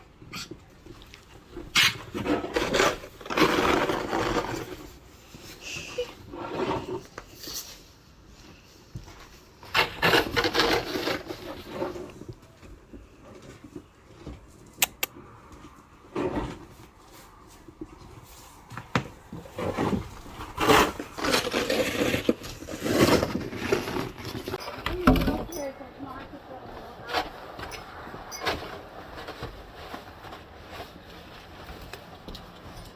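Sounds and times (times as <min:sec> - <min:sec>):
snow shovel scraping floor: 0:01.9 - 0:07.9, 0:09.6 - 0:12.2, 0:19.4 - 0:31.9
sharp clicks: 0:14.8 - 0:15.1.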